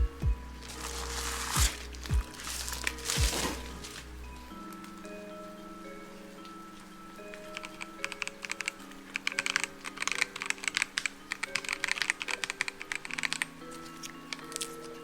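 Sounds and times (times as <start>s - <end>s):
soft background music: 0.0s - 15.0s
mechanical keyboard key clacks: 7.5s - 14.7s.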